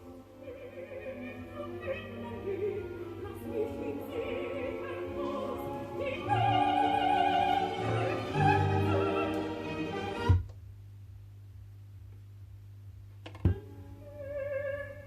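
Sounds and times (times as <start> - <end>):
low steady hum: 0.0 - 15.0
operatic singing with orchestra: 0.4 - 10.4.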